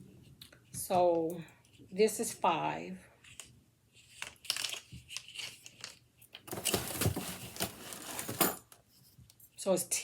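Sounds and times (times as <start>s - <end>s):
packaging crinkling and rustling: 6.4s - 8.6s.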